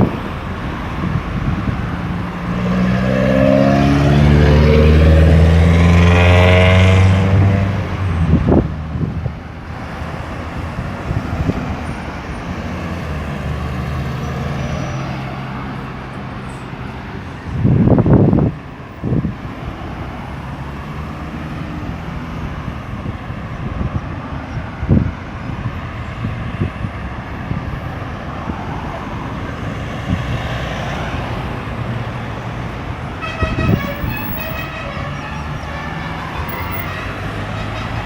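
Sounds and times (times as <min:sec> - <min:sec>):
road traffic: 0:00.0 - 0:38.0
vehicle horn: 0:33.1 - 0:38.0.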